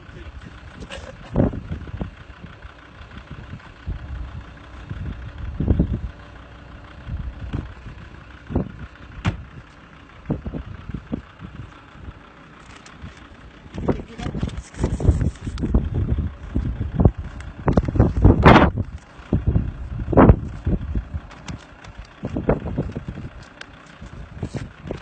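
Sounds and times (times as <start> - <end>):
low bumps: 0.0 - 25.0
vehicle engine idling: 0.0 - 25.0.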